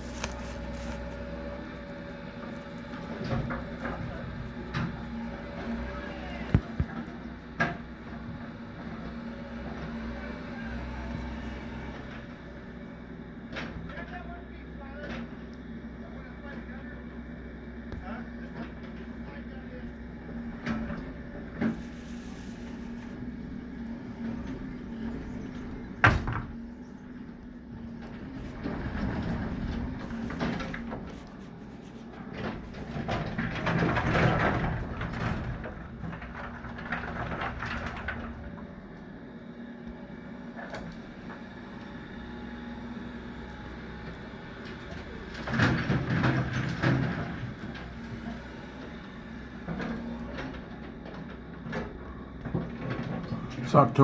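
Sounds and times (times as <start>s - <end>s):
concrete scraping and breaking: 0.0s - 5.8s
machinery engine humming: 0.0s - 54.0s.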